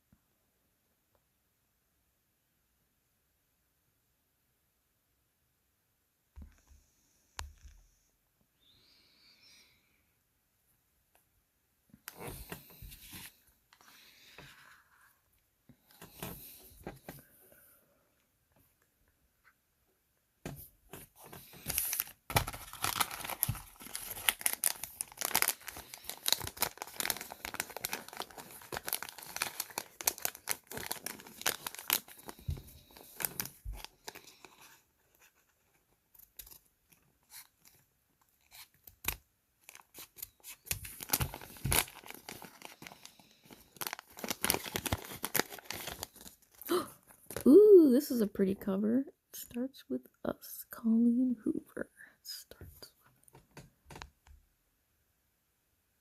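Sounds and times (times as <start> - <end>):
plastic packaging crinkling: 21.2 - 35.2, 38.4 - 47.5.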